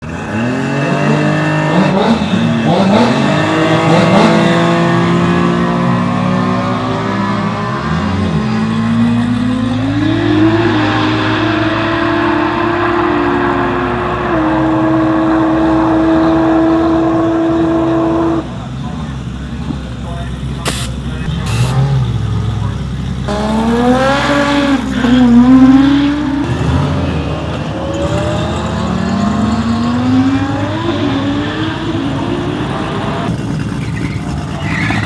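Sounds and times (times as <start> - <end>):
car engines revving: 0.0 - 35.0.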